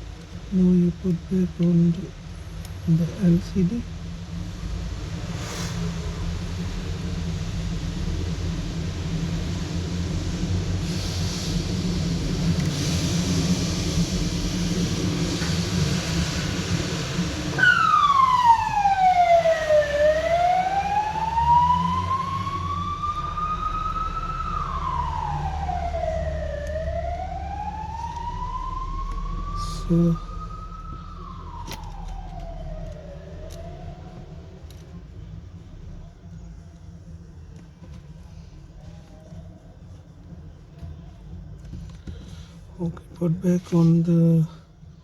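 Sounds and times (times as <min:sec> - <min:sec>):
low traffic rumble: 0:00.0 - 0:45.0
hiss: 0:04.0 - 0:21.5
emergency siren wailing: 0:08.3 - 0:36.4.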